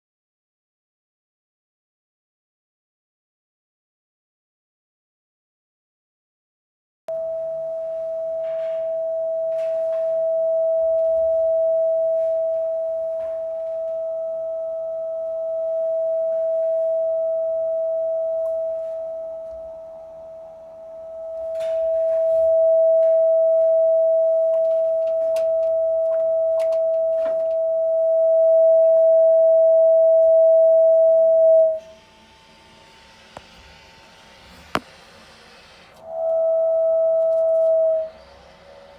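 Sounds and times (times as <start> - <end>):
high-pitched electrical whine: 7.1 - 38.9.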